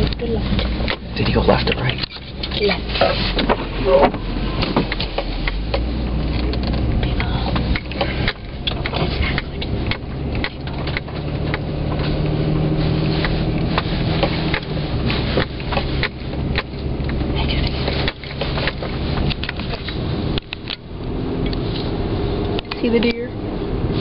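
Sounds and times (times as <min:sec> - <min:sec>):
car body knocks and rattles: 0:00.0 - 0:12.4
car engine humming: 0:00.0 - 0:24.0
tyres crunching through snow: 0:00.0 - 0:24.0.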